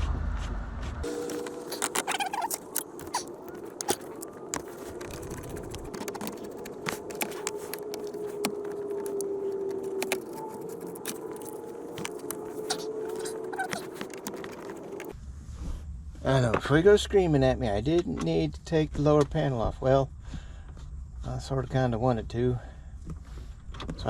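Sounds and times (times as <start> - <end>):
steady hum: 0.0 - 18.6.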